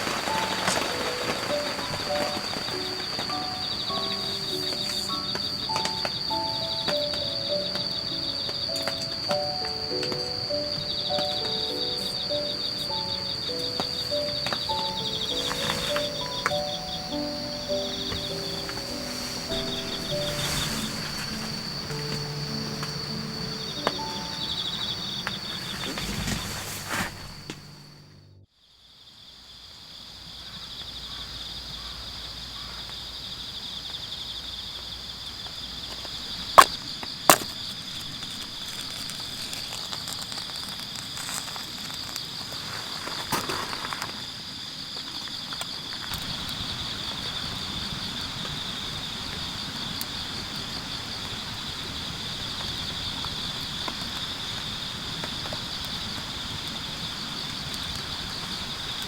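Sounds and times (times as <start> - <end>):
high-pitched insect chorus: 0.0 - 59.0
brief rustle: 14.0 - 16.6, 25.3 - 27.9.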